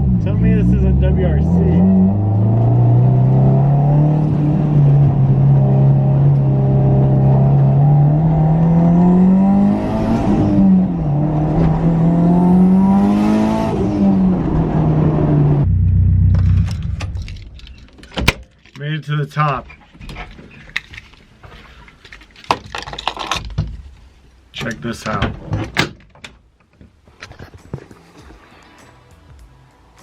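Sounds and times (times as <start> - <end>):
turbocharged engine revving: 0.0 - 17.5.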